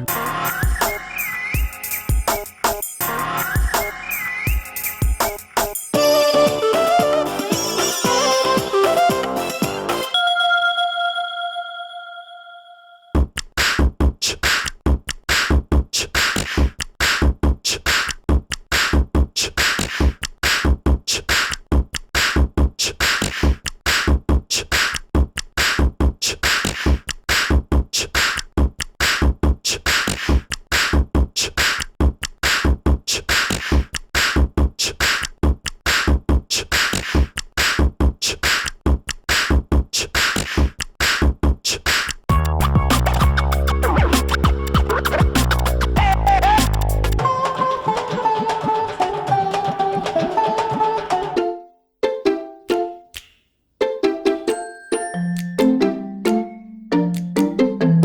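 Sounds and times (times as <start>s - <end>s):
electronic drum beat ringtone: 0.0s - 10.7s, 42.3s - 51.4s.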